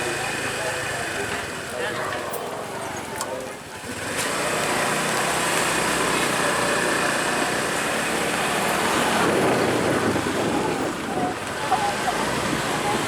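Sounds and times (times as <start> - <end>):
outdoor noise: 0.0 - 13.0
vehicle engine running: 3.8 - 13.0.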